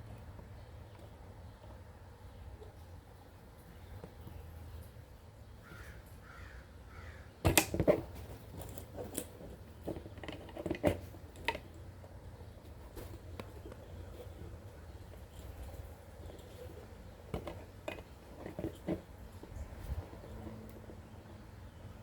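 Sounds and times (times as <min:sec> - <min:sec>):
faint bird calls: 0:05.5 - 0:07.4.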